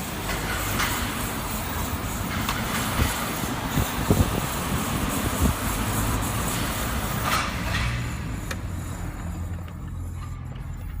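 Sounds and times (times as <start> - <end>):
car road noise rumble: 0.0 - 11.0.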